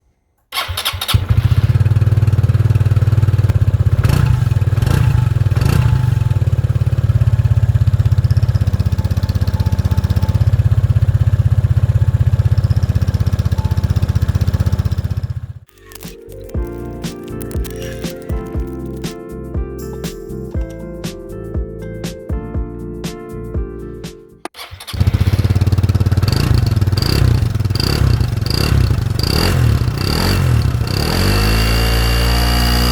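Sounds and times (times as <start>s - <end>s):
scooter engine running: 0.6s - 15.7s, 24.6s - 32.9s
throttle blips: 8.2s - 15.0s
music: 15.7s - 24.6s.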